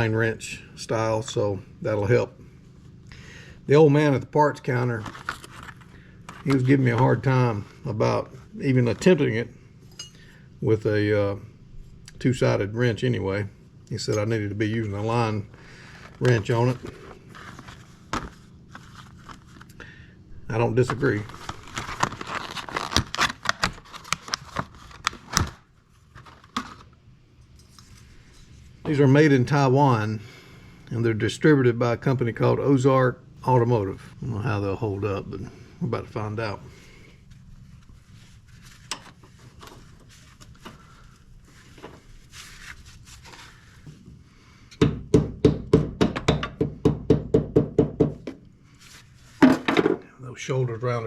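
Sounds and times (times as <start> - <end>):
plastic packaging crinkling: 20.7 - 27.0.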